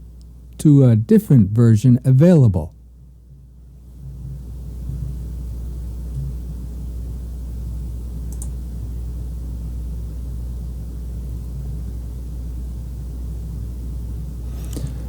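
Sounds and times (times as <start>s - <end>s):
steady low hum: 0.0s - 15.0s
faint click: 8.3s - 8.6s.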